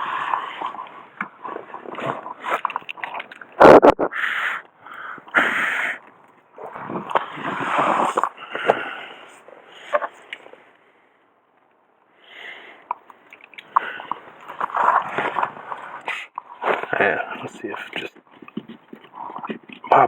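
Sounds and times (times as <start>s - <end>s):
rustling and clicks: 0.3s - 4.1s, 12.9s - 20.0s.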